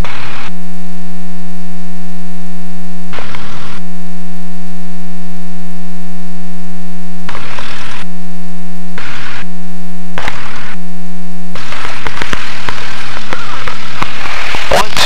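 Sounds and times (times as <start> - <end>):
loud static hiss: 0.0 - 15.0
static crackle: 0.0 - 15.0.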